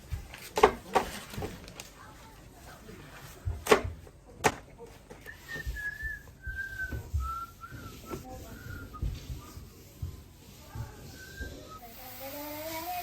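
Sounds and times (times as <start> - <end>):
person whistling a slow tune: 5.4 - 9.1.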